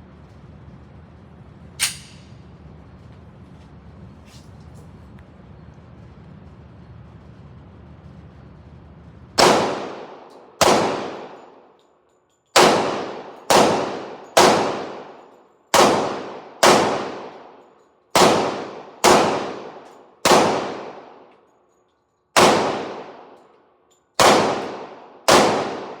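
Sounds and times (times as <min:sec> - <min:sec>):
pistol shots: 0:01.8 - 0:02.3, 0:09.4 - 0:11.7, 0:12.6 - 0:21.3, 0:22.4 - 0:23.4, 0:24.2 - 0:26.0
ringing gunshot echo: 0:09.4 - 0:11.4, 0:12.6 - 0:15.1, 0:15.8 - 0:17.3, 0:18.2 - 0:21.1, 0:22.4 - 0:23.3, 0:24.2 - 0:26.0.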